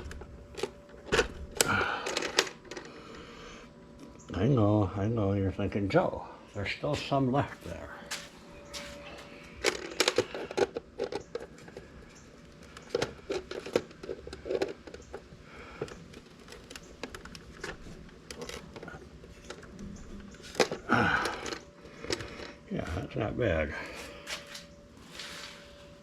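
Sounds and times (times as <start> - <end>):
hand tools clicking on plastic: 9.6 - 22.4.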